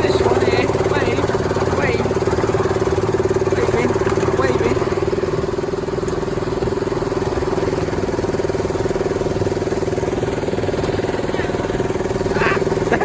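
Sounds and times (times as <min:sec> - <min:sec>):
small locomotive engine drone: 0:00.0 - 0:13.0.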